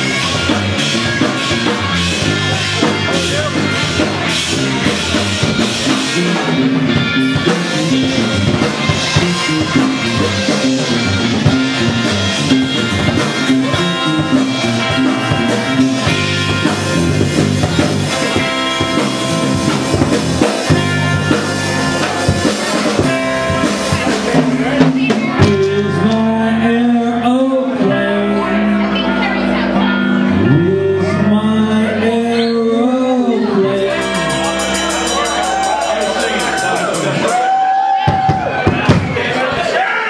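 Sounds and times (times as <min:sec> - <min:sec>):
music with drum beat: 0:00.0 - 0:26.3, 0:33.8 - 0:39.3
person singing: 0:20.4 - 0:37.4.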